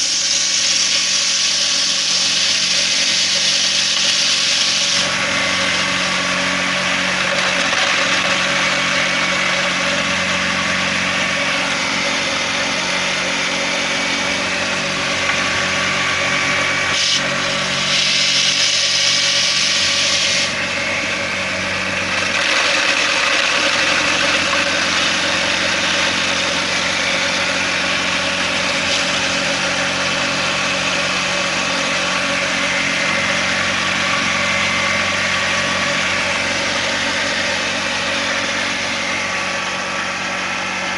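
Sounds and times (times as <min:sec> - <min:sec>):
rattling hiss of blades: 0:00.0 - 0:06.5, 0:15.4 - 0:20.6
grain grinder motor hum: 0:00.0 - 0:40.9.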